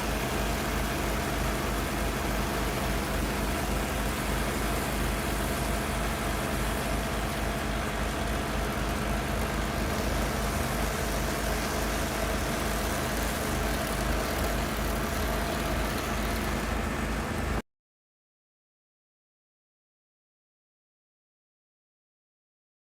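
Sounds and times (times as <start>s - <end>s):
stump grinder engine running: 0.0s - 17.6s.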